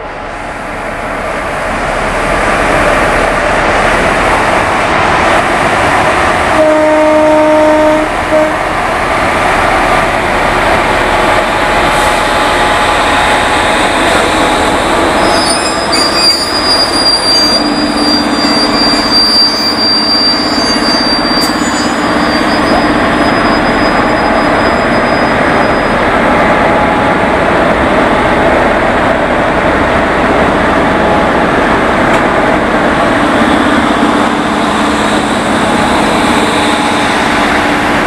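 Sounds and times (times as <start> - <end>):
train running on rails: 0.0 - 38.0
train horn blast: 6.5 - 8.7
high-pitched wheel squeal: 15.2 - 26.0.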